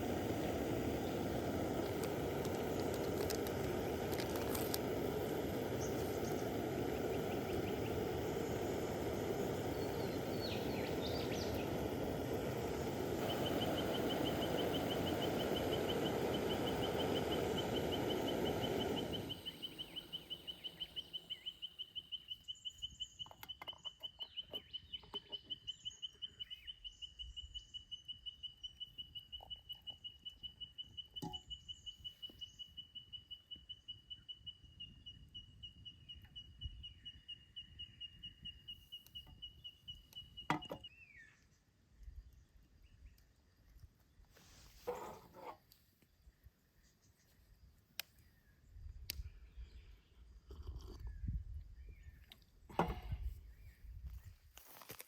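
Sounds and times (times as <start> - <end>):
steady rushing noise: 0.0 - 20.4
high rapidly pulsing chirp: 4.8 - 41.0
bird chirps: 5.7 - 41.6.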